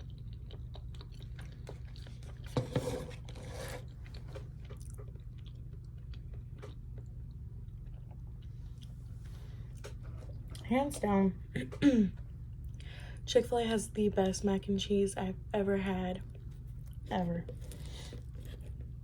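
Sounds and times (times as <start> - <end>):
person chewing food: 0.0 - 10.7, 16.2 - 19.0.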